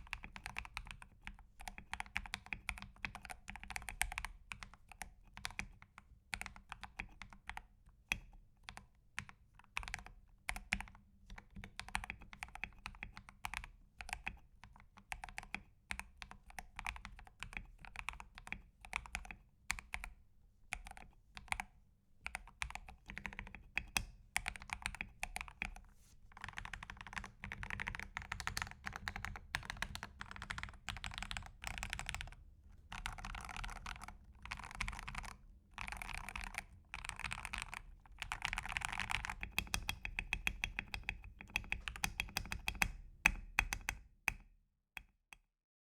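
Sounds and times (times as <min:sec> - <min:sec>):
mechanical keyboard typing: 0:00.0 - 0:07.6, 0:22.3 - 0:25.8, 0:26.4 - 0:44.0.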